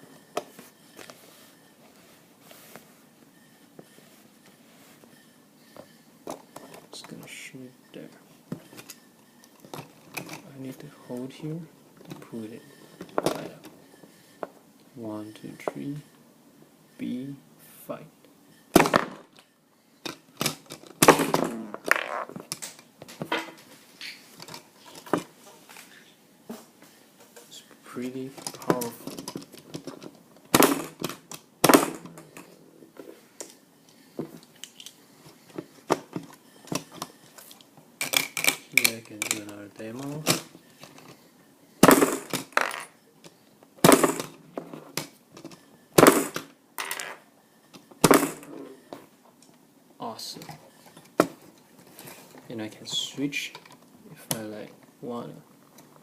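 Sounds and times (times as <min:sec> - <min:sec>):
plastic marbles clattering: 0:21.5 - 0:22.7.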